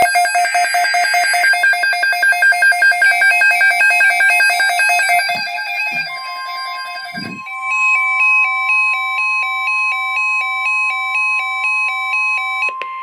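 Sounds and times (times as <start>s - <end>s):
electronic alert tone pulsing: 0.0s - 9.1s
steady tone: 3.5s - 9.2s.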